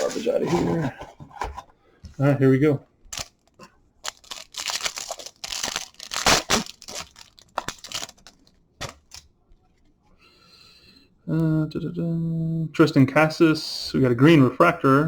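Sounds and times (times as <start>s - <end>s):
wrapper tearing and crinkling: 3.1s - 3.4s, 4.0s - 9.3s.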